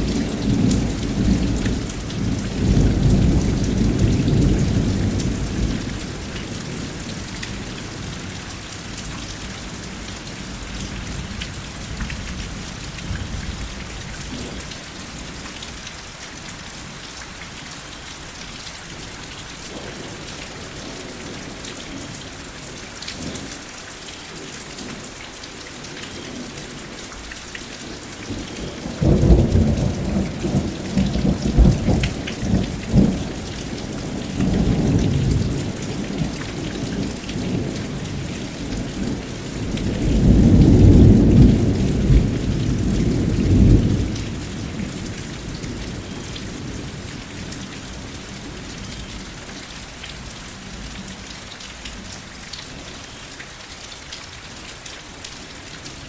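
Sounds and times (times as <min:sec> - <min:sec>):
rumble of thunder: 0:00.0 - 0:08.2, 0:28.3 - 0:48.1
steady rain: 0:00.0 - 0:56.0.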